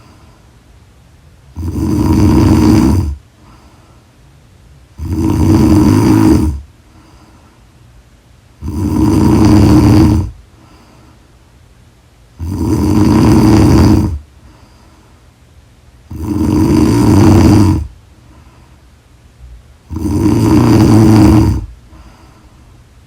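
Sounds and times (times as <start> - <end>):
quiet breaths: 0.0 - 23.0
loud snoring: 1.5 - 3.2, 5.0 - 6.7, 8.6 - 10.4, 12.4 - 14.2, 16.1 - 18.0, 19.8 - 21.8.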